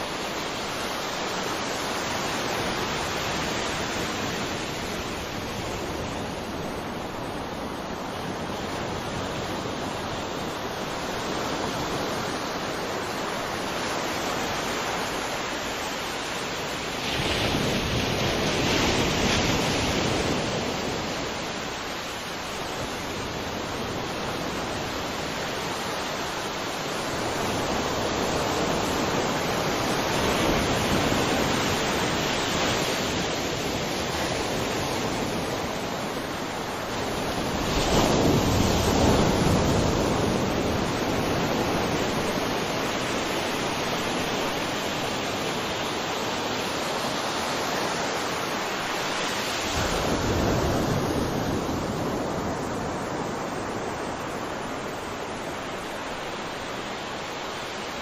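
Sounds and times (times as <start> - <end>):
ocean waves breaking: 0.0 - 58.0.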